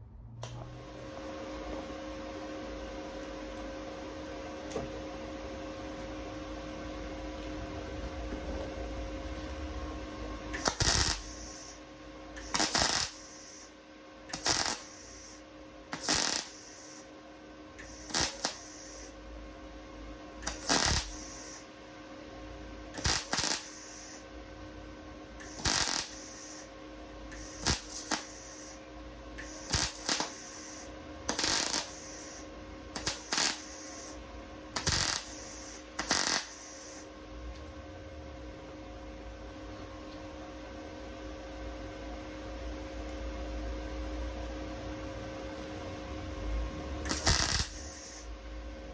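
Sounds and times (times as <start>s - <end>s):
welder steady hum: 0.0s - 48.9s
welder crackling bursts: 10.5s - 11.8s, 12.4s - 13.7s, 14.3s - 17.1s, 17.8s - 19.2s, 20.4s - 21.6s, 23.0s - 24.2s, 25.4s - 26.7s, 27.3s - 28.8s, 29.4s - 37.1s, 47.0s - 48.3s.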